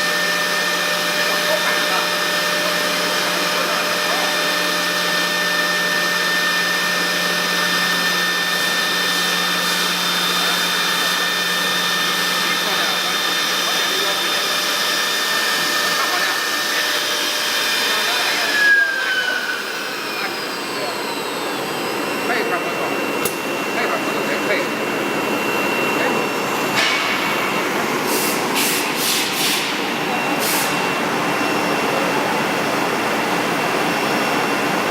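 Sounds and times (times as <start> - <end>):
cnc router whine: 0.0 - 34.9
short bursts of hiss: 28.1 - 29.7.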